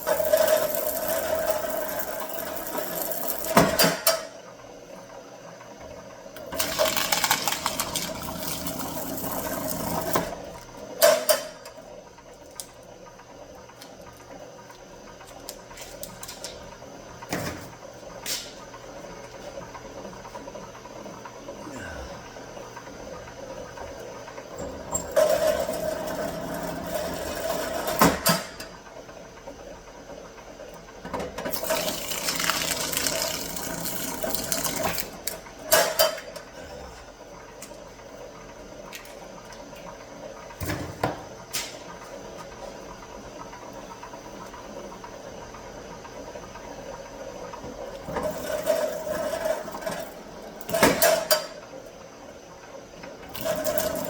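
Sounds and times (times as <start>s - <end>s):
steady low hum: 21.3s - 24.4s.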